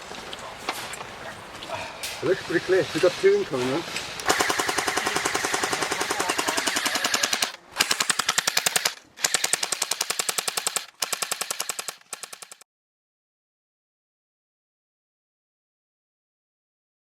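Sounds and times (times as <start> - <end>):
airsoft gun automatic fire: 4.2 - 12.6.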